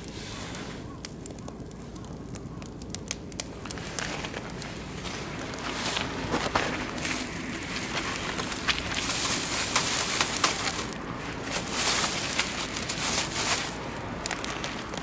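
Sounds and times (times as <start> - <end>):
rushing hiss of flame: 0.0 - 15.0
wood fire crackling and popping: 0.0 - 15.0.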